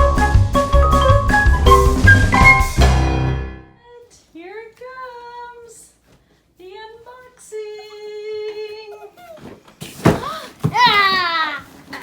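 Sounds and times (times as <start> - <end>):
upbeat music with drum beat: 0.0 - 3.5.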